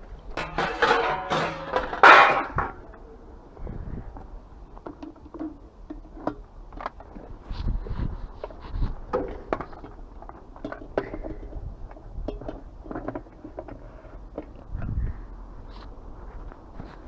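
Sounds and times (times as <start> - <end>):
scrap metal parts handled: 0.4 - 2.8.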